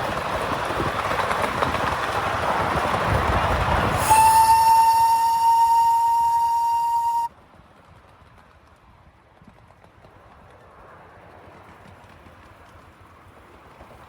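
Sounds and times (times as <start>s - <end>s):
locomotive whistle: 3.9s - 7.3s.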